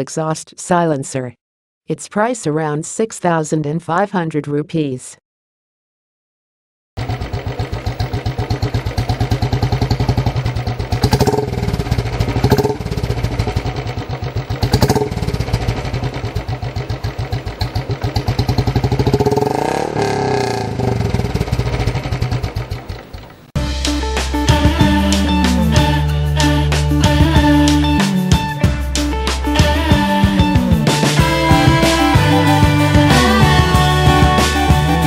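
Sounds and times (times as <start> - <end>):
motorcycle idling and revving: 7.0 - 23.6, 24.3 - 35.0.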